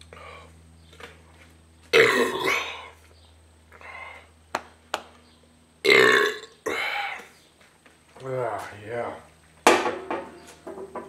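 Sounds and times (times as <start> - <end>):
man belching loudly: 1.9 - 3.0, 5.8 - 7.3.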